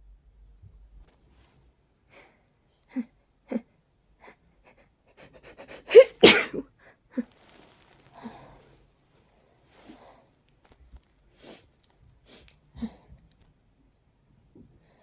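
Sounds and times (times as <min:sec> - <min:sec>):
person sneezing: 0:05.6 - 0:07.3.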